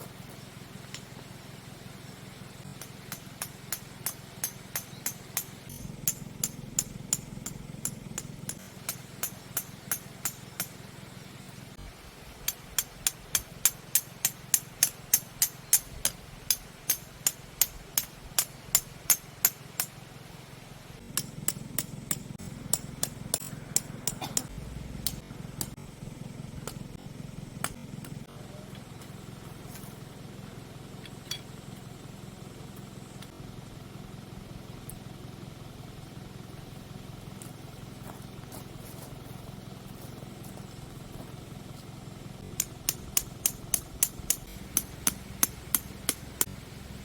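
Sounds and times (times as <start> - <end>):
tent pegs being hammered: 2.6 - 10.9, 12.4 - 20.0, 21.1 - 25.8, 27.6 - 28.2, 42.4 - 46.6.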